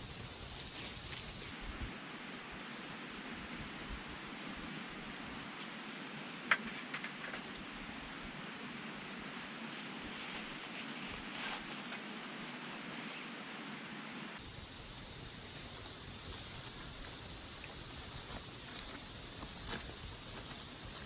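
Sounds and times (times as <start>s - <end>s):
fire popping: 0.0s - 1.6s, 14.4s - 21.0s
wood fire crackling: 0.0s - 1.6s, 14.4s - 21.0s.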